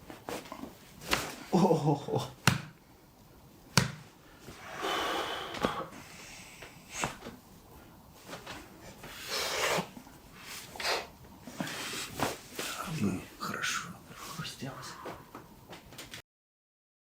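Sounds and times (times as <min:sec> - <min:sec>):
person breathing out heavily: 0:04.4 - 0:07.1.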